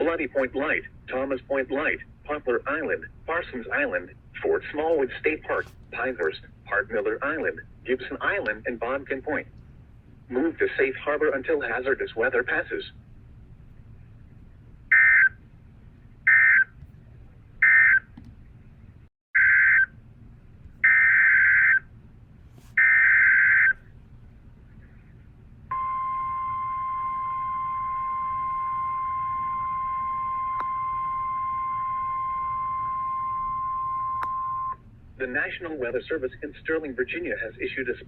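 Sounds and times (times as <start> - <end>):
steady loud alarm tone: 14.9 - 15.3, 20.8 - 21.8, 22.8 - 23.8, 25.7 - 34.8.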